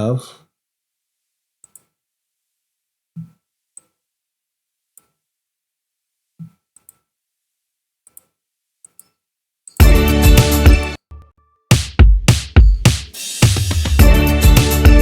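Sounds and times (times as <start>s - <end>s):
electronic pop beat: 9.8s - 15.0s.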